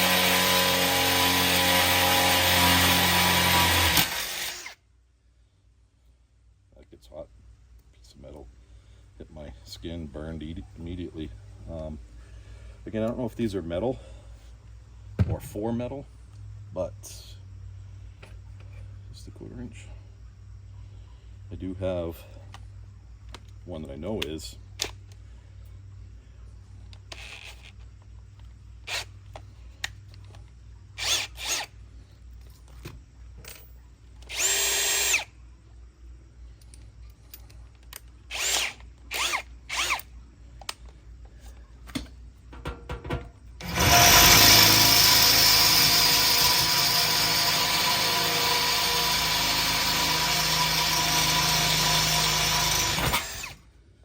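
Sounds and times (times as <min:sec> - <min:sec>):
power drill boring through metal: 0:00.0 - 0:04.8, 0:31.0 - 0:31.7, 0:34.3 - 0:35.3, 0:38.3 - 0:40.1, 0:43.6 - 0:53.6
handling knocks: 0:42.0 - 0:43.4.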